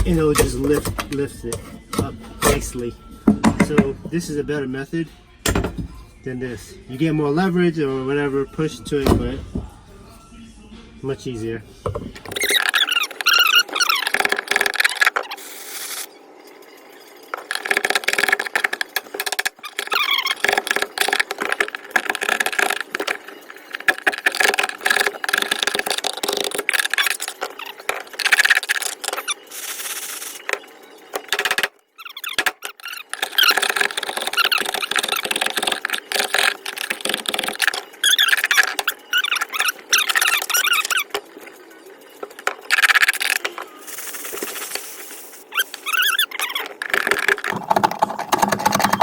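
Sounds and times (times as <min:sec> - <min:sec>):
scraper squealing on sheet metal: 0:00.0 - 0:06.1, 0:12.2 - 0:16.1, 0:17.5 - 0:23.0, 0:31.2 - 0:41.4, 0:42.6 - 0:49.0.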